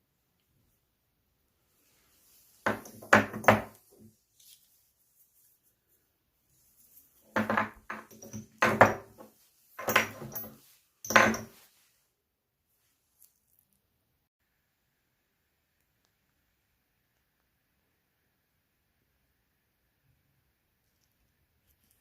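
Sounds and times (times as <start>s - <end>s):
hard objects knocking and clattering: 2.6s - 3.9s, 7.3s - 11.6s.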